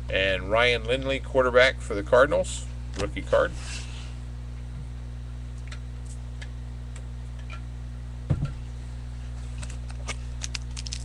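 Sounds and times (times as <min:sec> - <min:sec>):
electrical hum: 0:00.0 - 0:11.0
soft low thump: 0:08.3 - 0:08.6
trading cards flipping: 0:09.6 - 0:11.0.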